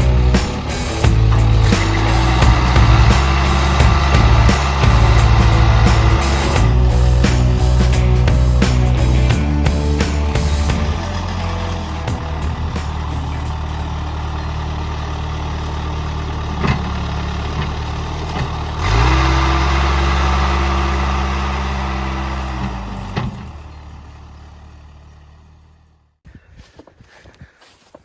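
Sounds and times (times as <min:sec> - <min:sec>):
scraping dirt: 0:00.0 - 0:14.4
diesel tractor engine running: 0:00.0 - 0:26.2.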